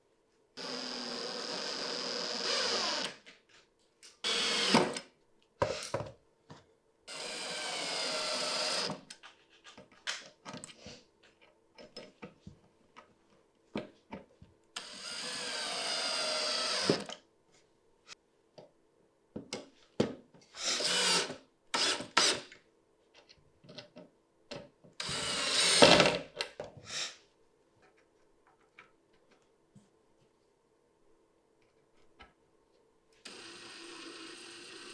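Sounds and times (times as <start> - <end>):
drill driving screws into wood: 0.6 - 3.2, 4.2 - 5.1, 7.1 - 9.0, 14.8 - 17.1, 20.6 - 22.5, 25.0 - 26.2, 33.2 - 34.9.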